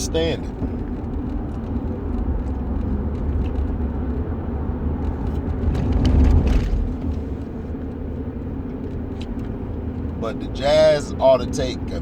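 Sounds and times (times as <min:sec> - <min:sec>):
vehicle rumbling: 0:00.0 - 0:12.0.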